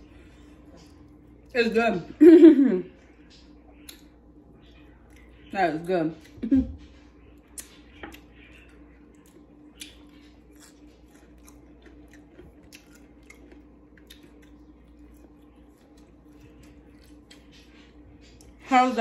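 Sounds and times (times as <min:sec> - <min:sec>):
low steady hum: 0:00.0 - 0:19.0
chewing fried chicken: 0:02.9 - 0:18.7.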